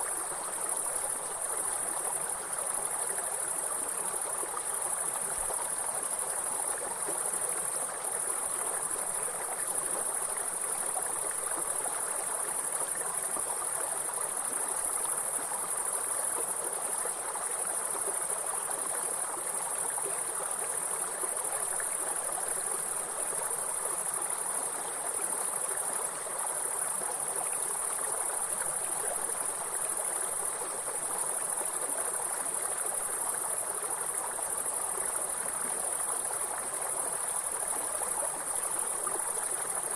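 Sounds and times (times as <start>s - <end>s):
flowing stream: 0.0s - 39.9s
insects chirring: 0.0s - 39.9s.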